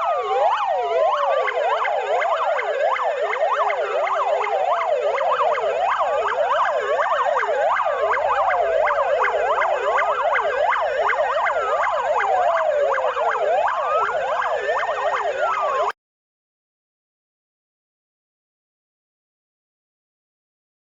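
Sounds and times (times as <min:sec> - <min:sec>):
fast yelping sirens: 0:00.0 - 0:16.0
wailing sirens: 0:00.0 - 0:16.0.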